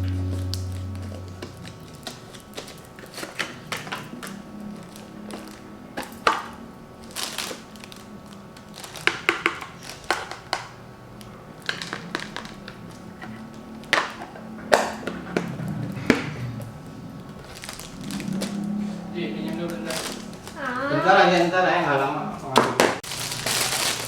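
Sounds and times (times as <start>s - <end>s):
faint background music: 0.0s - 3.2s, 13.1s - 22.6s.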